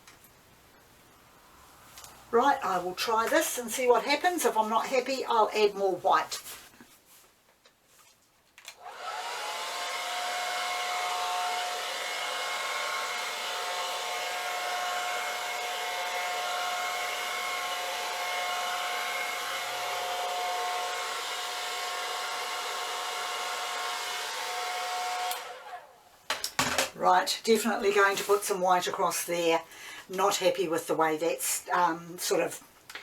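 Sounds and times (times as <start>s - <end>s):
blow dryer whining: 8.7s - 26.1s.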